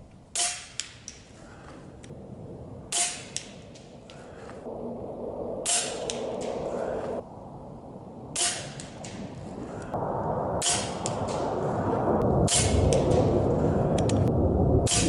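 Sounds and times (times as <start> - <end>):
air rifle shot crack: 5.5 - 7.2, 8.3 - 15.0.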